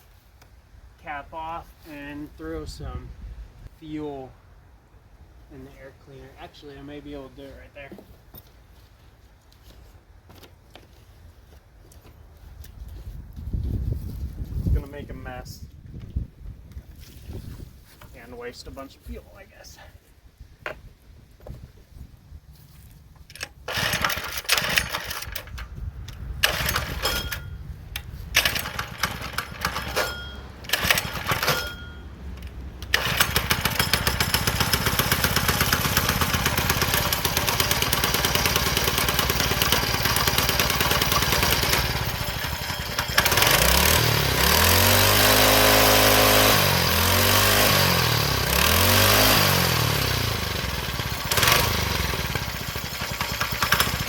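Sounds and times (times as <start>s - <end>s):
small engine coughing on pull-start: 23.7s - 25.3s
small engine running and revving: 30.7s - 31.8s, 32.9s - 54.0s.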